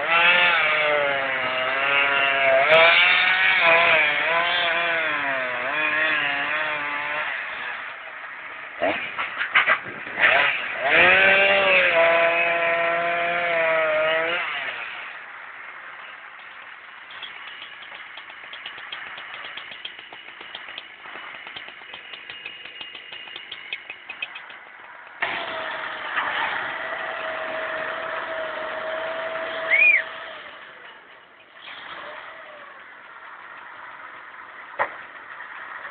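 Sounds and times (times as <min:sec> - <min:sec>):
motor revving and whining: 0:00.0 - 0:08.0, 0:09.8 - 0:15.1, 0:25.2 - 0:30.8, 0:31.6 - 0:32.8
fast light ticking: 0:17.1 - 0:25.2
short squeal: 0:29.5 - 0:30.2.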